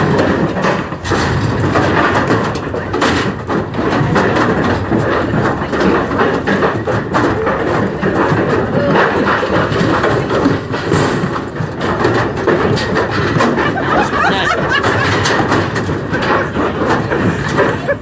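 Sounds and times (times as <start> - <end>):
hooves clattering and thumping: 0.0 - 18.0
crowd chatter: 2.4 - 18.0.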